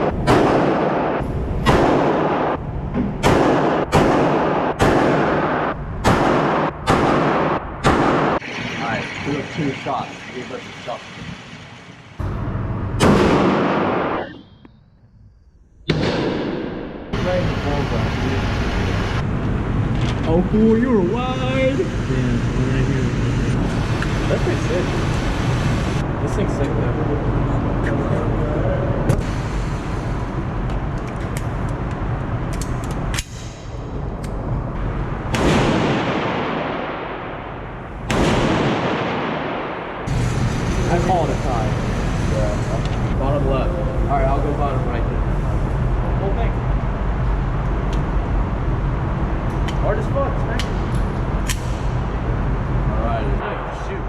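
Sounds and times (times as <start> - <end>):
gunshots with echo: 0.0 - 2.6, 3.2 - 9.8, 13.0 - 14.4, 15.9 - 17.2, 35.3 - 40.3.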